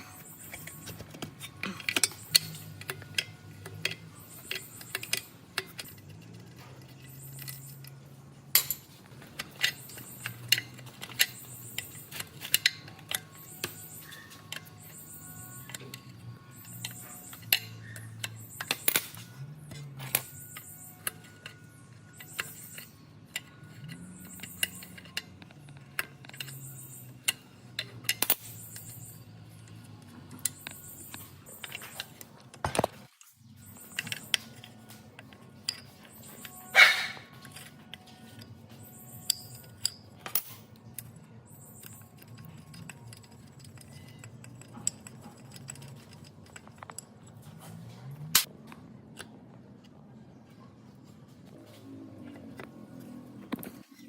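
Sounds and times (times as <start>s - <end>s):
metallic clinks of hand tools: 0.1s - 32.2s, 33.6s - 47.4s.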